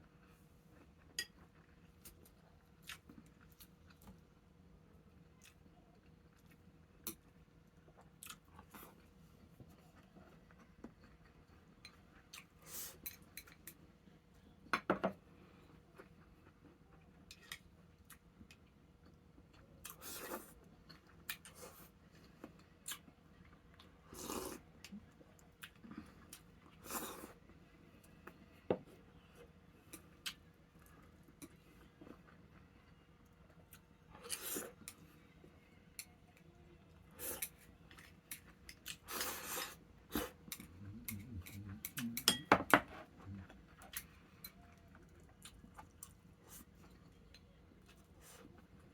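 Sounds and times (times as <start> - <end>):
chewing or slurping: 24.1 - 24.6, 38.9 - 42.4
tableware clinking on dishes: 42.2 - 42.9.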